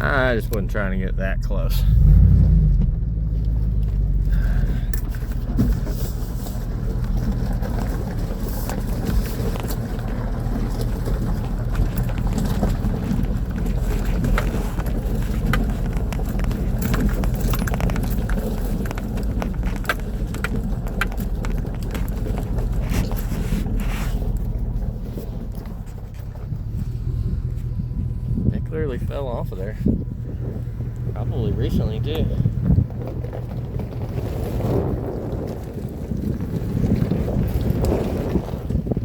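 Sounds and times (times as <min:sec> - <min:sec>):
off-road vehicle engine rumble: 0:00.0 - 0:39.0
vehicle rattling: 0:00.0 - 0:39.0
stones clicking and knocking: 0:07.0 - 0:24.8.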